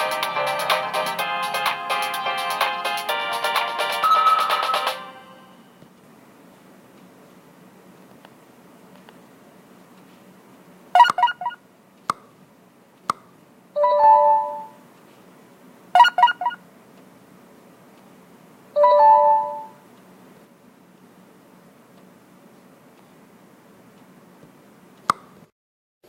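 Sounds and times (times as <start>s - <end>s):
held chime tone: 4.0s - 5.7s.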